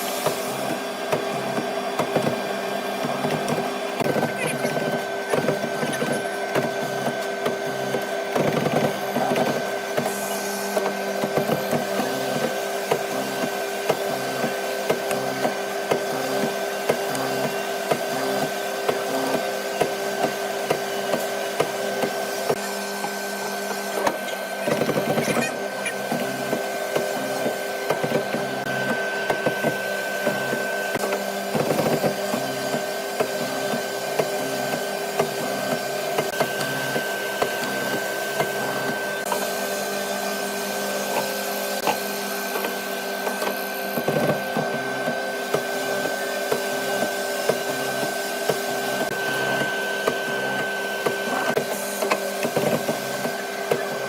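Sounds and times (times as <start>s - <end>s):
woodworking machine humming: 0.0s - 54.0s.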